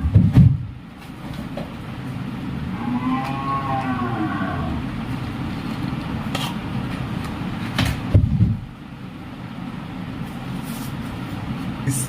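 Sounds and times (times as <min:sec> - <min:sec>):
steady low rumble: 0:03.7 - 0:12.0.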